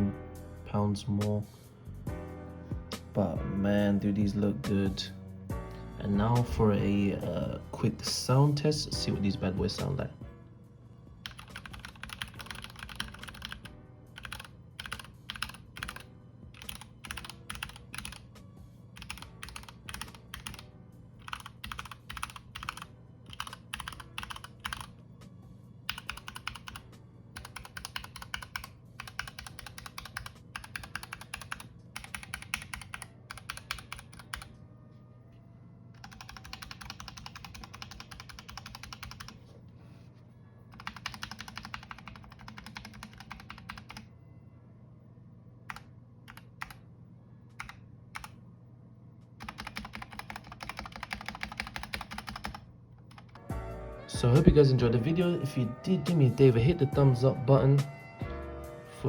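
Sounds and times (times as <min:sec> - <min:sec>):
mechanical keyboard typing: 0:11.2 - 0:18.3, 0:19.0 - 0:24.9, 0:25.9 - 0:26.8, 0:27.4 - 0:34.5, 0:36.0 - 0:39.4, 0:40.7 - 0:44.1, 0:45.7 - 0:46.8, 0:47.6 - 0:48.4, 0:49.4 - 0:53.4.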